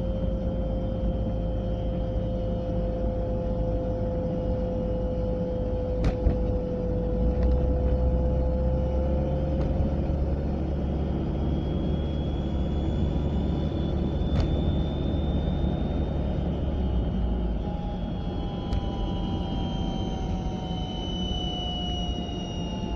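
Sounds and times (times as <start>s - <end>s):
steady whine rising in pitch: 0.0s - 22.9s
road and engine rumble: 3.2s - 20.6s.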